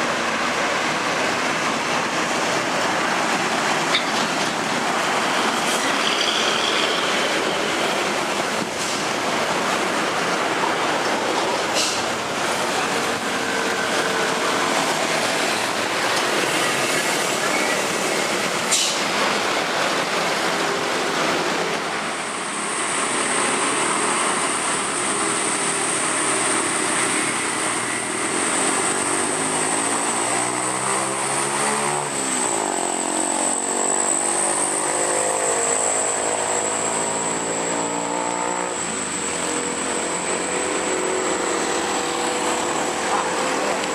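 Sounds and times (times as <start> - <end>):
bus passing close: 0.0 - 43.9
heavy road traffic: 0.0 - 43.9
high-pitched whine: 21.5 - 43.9.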